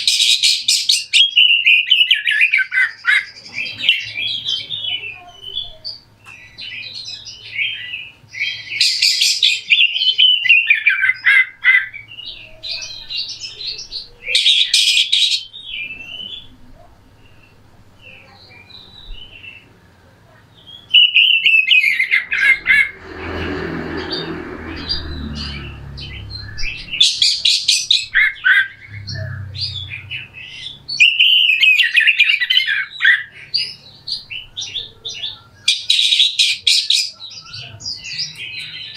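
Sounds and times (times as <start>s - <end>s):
magpie-robin singing harsh song: 0.0s - 16.6s, 20.6s - 23.0s, 24.1s - 38.9s
rushing noise: 21.9s - 30.0s.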